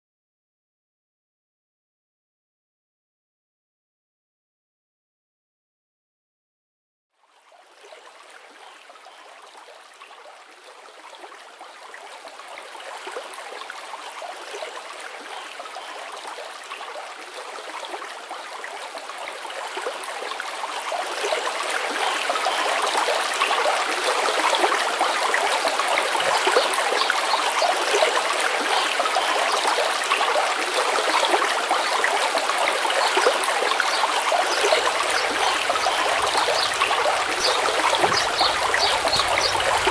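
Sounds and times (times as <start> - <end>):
stream water rushing: 28.6 - 39.9.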